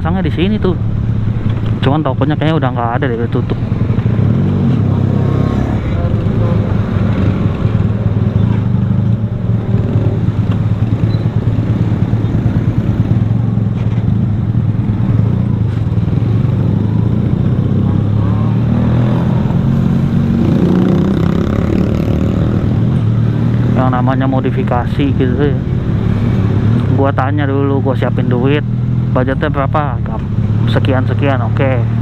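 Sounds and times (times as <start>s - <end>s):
motorcycle engine running: 0.0s - 26.9s
road noise: 0.0s - 32.0s.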